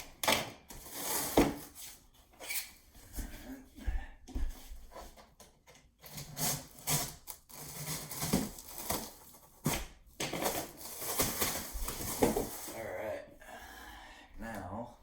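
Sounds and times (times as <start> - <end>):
cardboard and plastic rustling: 4.4 - 13.0.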